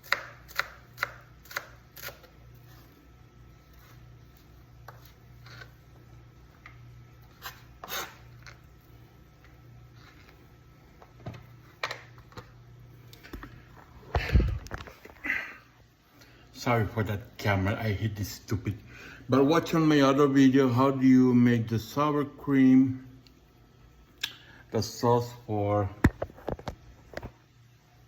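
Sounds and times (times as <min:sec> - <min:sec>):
steady low hum: 0:00.0 - 0:28.0
knife cutting on cutting board: 0:03.7 - 0:05.7, 0:07.2 - 0:08.6.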